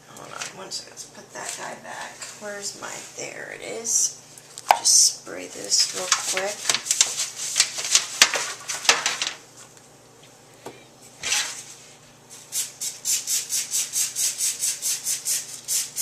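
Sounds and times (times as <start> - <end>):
spray bottle spritzing: 12.5 - 16.0.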